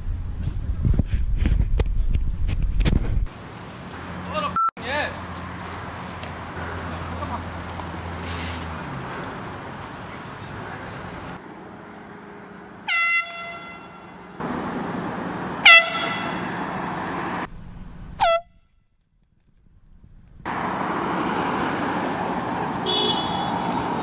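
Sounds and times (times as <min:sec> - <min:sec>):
air horn blasts: 0:12.9 - 0:14.2, 0:15.6 - 0:16.4, 0:18.2 - 0:18.7, 0:22.8 - 0:23.6.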